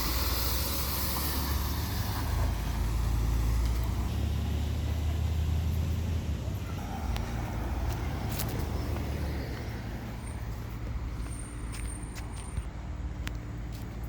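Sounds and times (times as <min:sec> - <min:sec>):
fire engine idling: 0:00.0 - 0:07.4.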